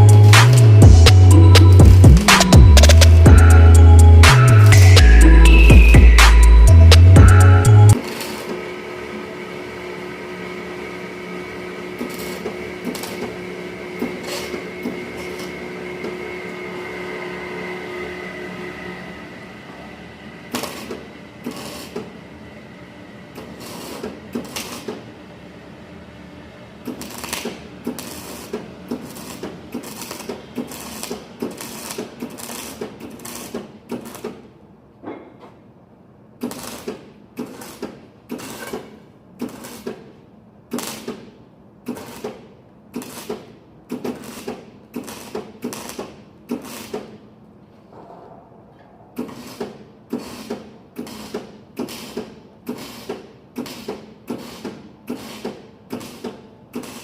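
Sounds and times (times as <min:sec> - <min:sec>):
hand tool creaking and scraping: 0:36.4 - 0:40.1.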